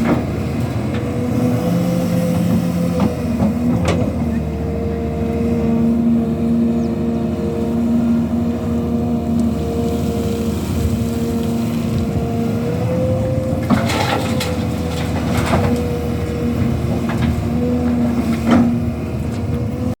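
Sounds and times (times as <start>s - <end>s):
diesel engine running: 0.0s - 20.0s
dirt and rock clattering: 13.4s - 19.4s.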